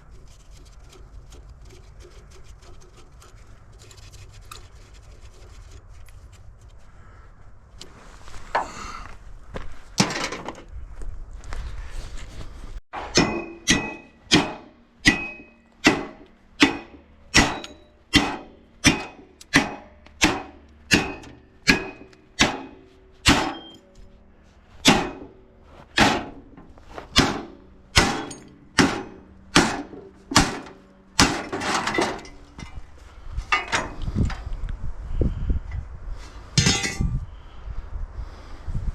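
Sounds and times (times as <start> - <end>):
irregular metallic clatter: 24.8 - 32.9.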